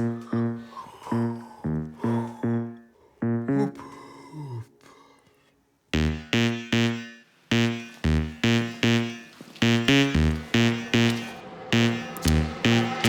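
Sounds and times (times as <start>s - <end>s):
synth bass riff stabs: 0.0s - 0.7s, 1.7s - 3.8s, 6.0s - 13.0s
synth sound: 0.0s - 0.7s, 1.7s - 3.8s, 6.0s - 13.0s
electronic backing beat: 0.0s - 3.8s, 6.0s - 13.0s.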